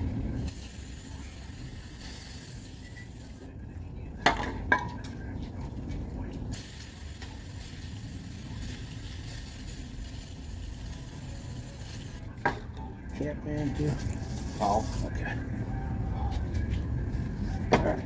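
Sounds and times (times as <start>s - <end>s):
steady hiss: 6.6s - 12.2s.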